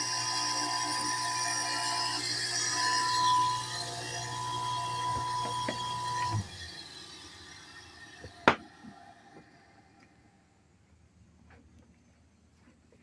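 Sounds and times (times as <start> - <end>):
pump motor humming and whining: 0.0 - 10.4.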